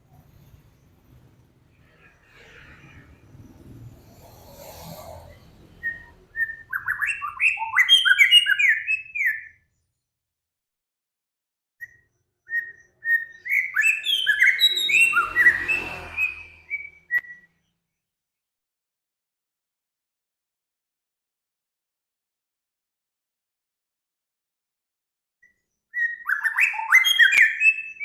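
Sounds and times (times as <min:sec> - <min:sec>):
songbird singing: 0:05.7 - 0:10.1, 0:11.8 - 0:17.8, 0:25.4 - 0:28.0.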